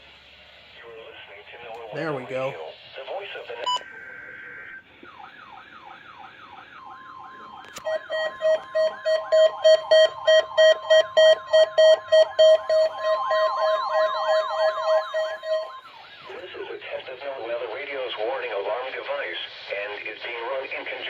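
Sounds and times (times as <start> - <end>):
steady warning tone: 5.1 - 16.8
siren-like sweeping tone: 5.2 - 16.3
loud pulsed beeping: 7.8 - 15.9.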